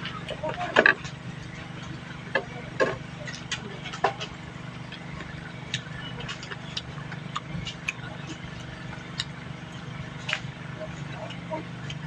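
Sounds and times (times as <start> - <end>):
steady low hum: 0.0 - 12.0
chewing clicks and smacks: 4.9 - 10.5.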